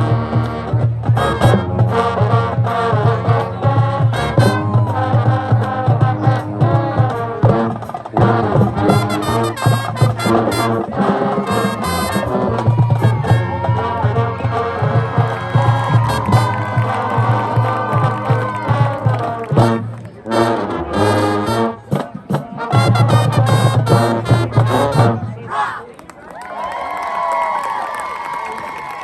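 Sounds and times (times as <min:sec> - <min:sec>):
drumline beat: 0:00.0 - 0:25.4
brass section melody: 0:00.0 - 0:25.5.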